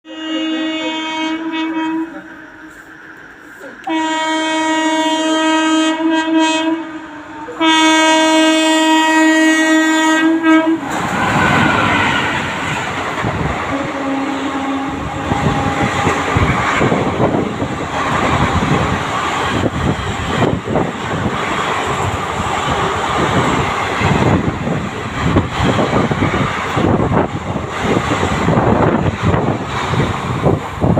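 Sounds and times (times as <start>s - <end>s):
train horn blasts: 0.1s - 2.3s, 3.8s - 12.5s, 13.7s - 18.5s
train rushing past: 0.1s - 30.9s.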